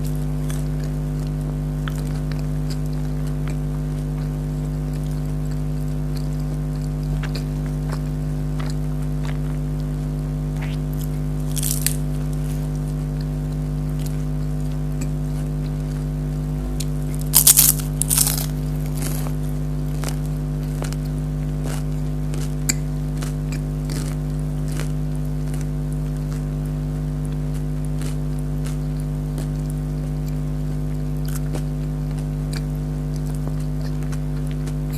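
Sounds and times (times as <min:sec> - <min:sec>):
crunchy chewing: 0:00.0 - 0:34.9
steady low hum: 0:00.0 - 0:34.9.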